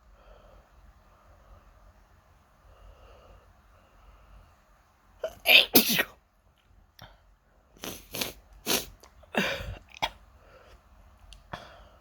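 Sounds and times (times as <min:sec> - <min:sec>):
person sniffing: 0:07.8 - 0:09.8
person snorting: 0:07.8 - 0:10.0.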